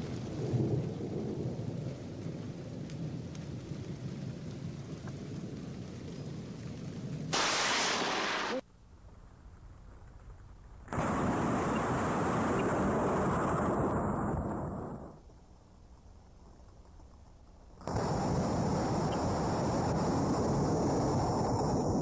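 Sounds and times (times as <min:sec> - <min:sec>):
low rolling thunder: 0:00.0 - 0:08.6, 0:10.9 - 0:15.2, 0:17.9 - 0:22.0
rain falling: 0:00.0 - 0:22.0
loud lightning crack: 0:07.2 - 0:08.6, 0:10.9 - 0:15.2, 0:17.9 - 0:22.0.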